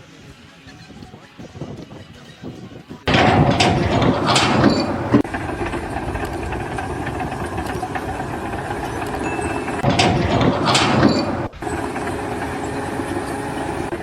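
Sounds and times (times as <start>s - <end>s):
engine running: 3.1s - 14.0s.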